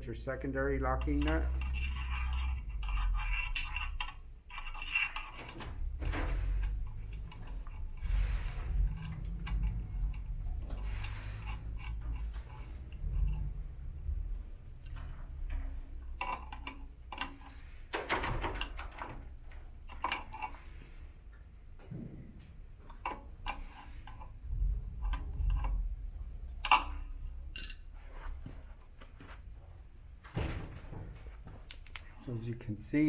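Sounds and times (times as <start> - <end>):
metal tools clinking: 0.9 - 13.4, 26.6 - 28.3.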